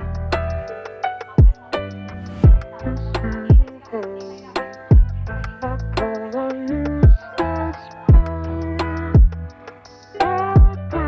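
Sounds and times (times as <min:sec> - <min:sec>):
ticking hi-hats: 0:00.0 - 0:11.0
deep kick drum: 0:01.4 - 0:01.6, 0:02.4 - 0:03.7, 0:04.9 - 0:05.8, 0:06.9 - 0:07.2, 0:08.1 - 0:09.5, 0:10.6 - 0:11.0.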